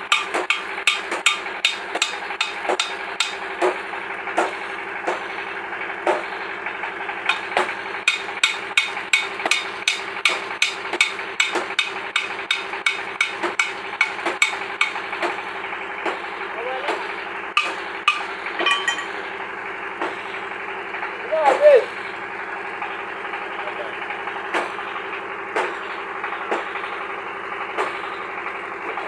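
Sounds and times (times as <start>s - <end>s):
hammer striking metal: 0.0s - 3.8s, 7.3s - 15.4s, 17.6s - 19.2s.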